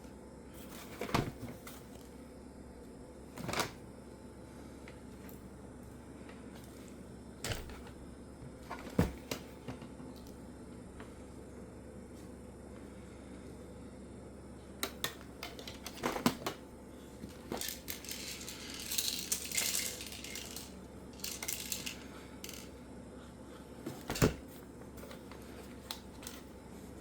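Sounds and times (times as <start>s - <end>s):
toy gun parts clicking: 17.6s - 22.7s.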